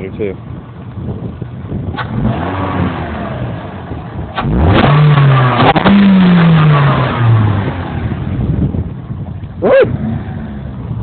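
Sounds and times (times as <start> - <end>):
car engine revving: 1.7 - 8.9, 9.6 - 11.0.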